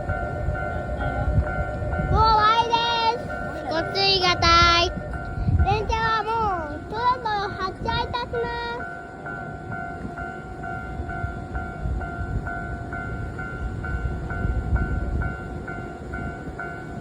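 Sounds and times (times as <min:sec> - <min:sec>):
level crossing warning bell: 0:00.0 - 0:17.0
train rumbling past: 0:00.0 - 0:17.0.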